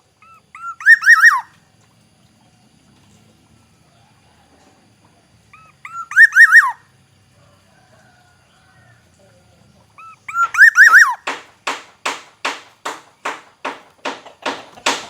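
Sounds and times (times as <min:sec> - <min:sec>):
bird singing fluty whistles: 0:00.3 - 0:01.5, 0:05.6 - 0:06.8, 0:10.0 - 0:11.2.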